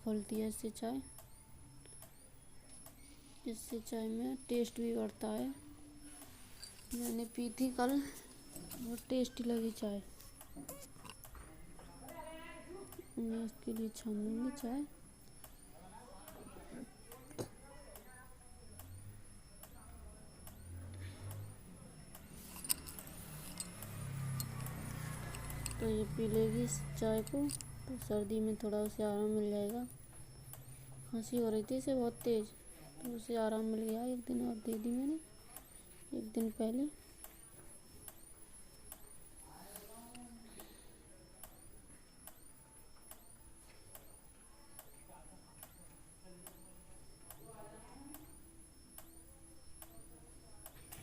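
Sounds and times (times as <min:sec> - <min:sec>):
faint regular ticks: 0:12.9 - 0:15.6, 0:17.9 - 0:51.0
sharp clinks: 0:22.4 - 0:27.8.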